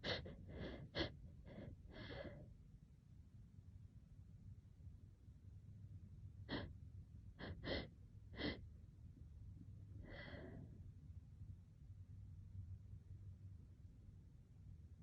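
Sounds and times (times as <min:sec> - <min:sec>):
person gasping: 0:00.0 - 0:02.4.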